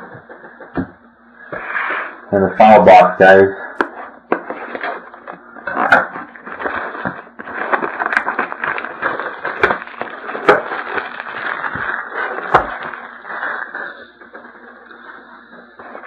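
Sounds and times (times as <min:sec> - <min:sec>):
packaging crinkling and tearing: 0:04.3 - 0:16.0.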